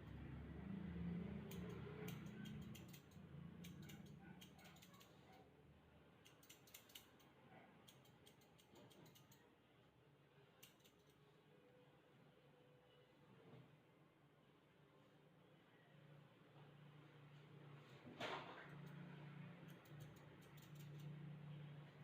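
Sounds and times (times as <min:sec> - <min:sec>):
scissors snipping: 0:01.4 - 0:05.4, 0:06.2 - 0:09.4, 0:19.6 - 0:21.2.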